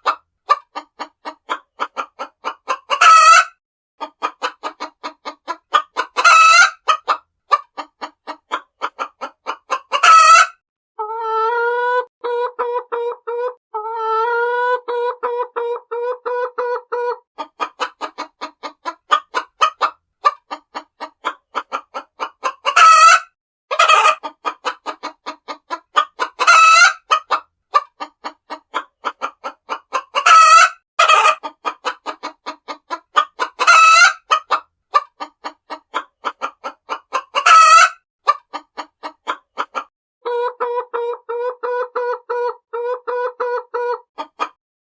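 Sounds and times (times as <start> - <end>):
hens clucking: 0.0 - 44.6.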